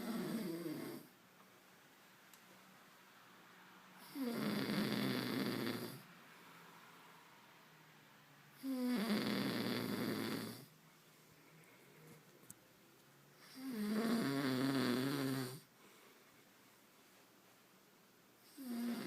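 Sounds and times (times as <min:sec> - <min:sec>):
child snoring: 0:00.0 - 0:01.1, 0:04.0 - 0:06.1, 0:08.6 - 0:10.7, 0:13.4 - 0:15.7, 0:18.5 - 0:19.0.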